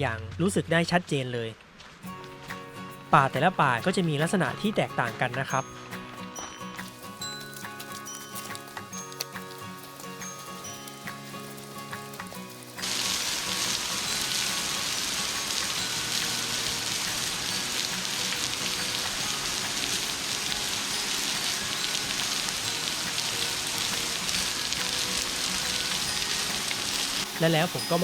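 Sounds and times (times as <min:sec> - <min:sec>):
soft background music: 0:02.0 - 0:28.0
waterfall rushing: 0:10.1 - 0:28.0.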